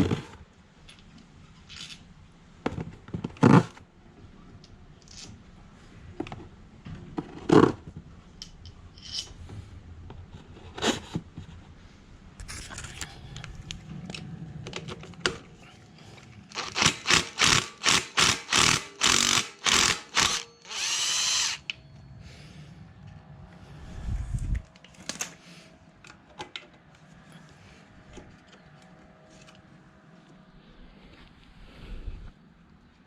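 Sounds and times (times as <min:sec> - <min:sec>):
power drill running: 0:16.5 - 0:21.7.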